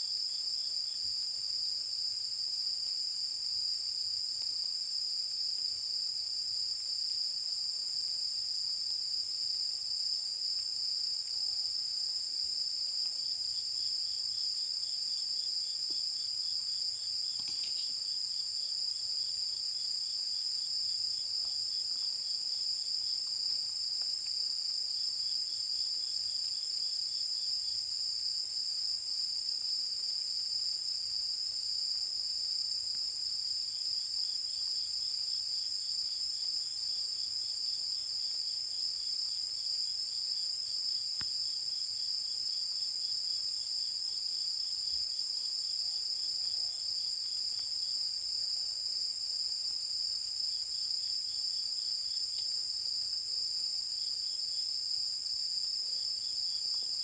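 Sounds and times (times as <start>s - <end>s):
high insect trill: 14.3s - 18.8s.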